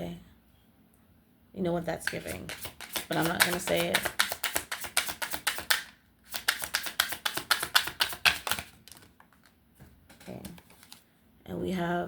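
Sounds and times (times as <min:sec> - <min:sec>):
cards being shuffled: 0:02.0 - 0:11.1.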